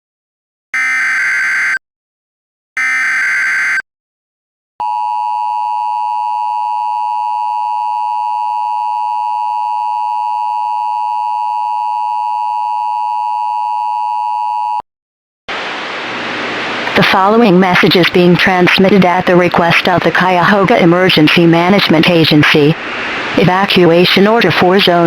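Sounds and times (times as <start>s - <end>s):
steady two-tone alert signal: 0.8s - 1.8s, 2.8s - 3.8s.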